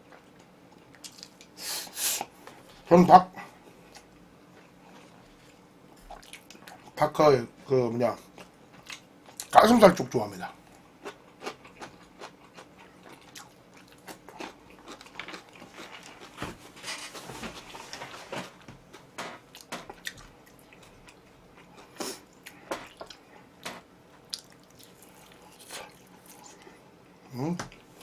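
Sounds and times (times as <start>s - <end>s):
chewing with wet mouth smacks: 6.1s - 6.9s, 11.0s - 16.4s, 19.5s - 23.2s, 24.3s - 26.7s.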